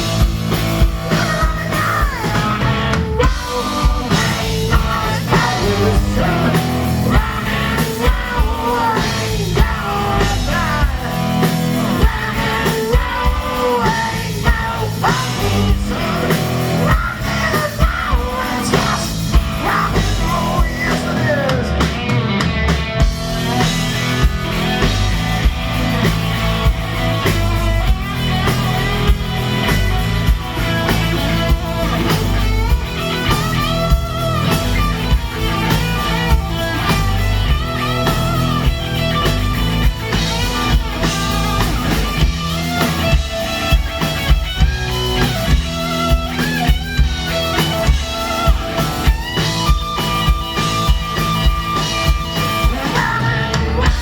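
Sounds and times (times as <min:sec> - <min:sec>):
bass guitar: 0:00.0 - 0:54.0
distorted lead guitar: 0:00.0 - 0:54.0
drum kit: 0:00.0 - 0:54.0.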